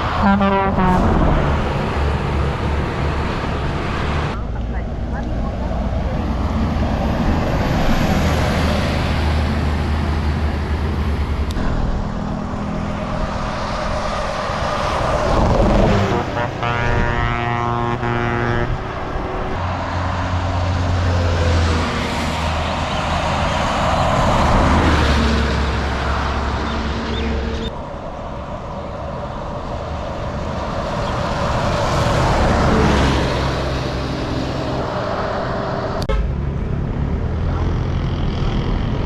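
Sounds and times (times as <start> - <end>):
multi-tone bus horn: 0.0 - 1.8, 15.6 - 19.6
buses passing at speed: 0.0 - 39.0.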